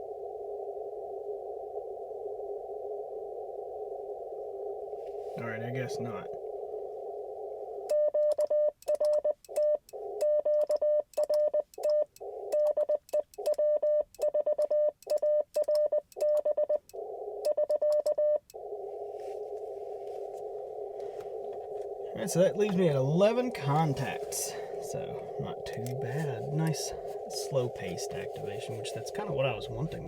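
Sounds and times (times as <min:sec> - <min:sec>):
radio band hiss: 0:05.2 - 0:06.4, 0:19.4 - 0:30.0
morse code beeps: 0:07.9 - 0:16.8, 0:17.4 - 0:18.4, 0:20.4 - 0:30.0.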